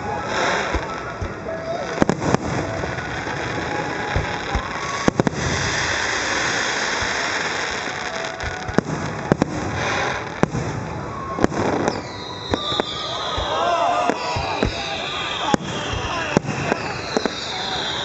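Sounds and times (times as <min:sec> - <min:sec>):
fireworks crackling: 0:00.0 - 0:18.0
firework shells bursting: 0:11.4 - 0:18.0.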